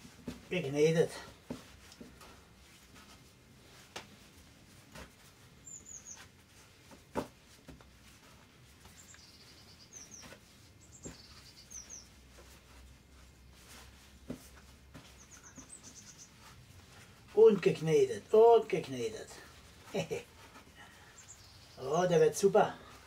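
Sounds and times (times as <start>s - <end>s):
bread dough kneaded by hand: 0.0s - 23.0s
small bird chirping: 5.6s - 6.3s, 8.8s - 12.2s, 15.0s - 16.6s, 20.8s - 22.2s.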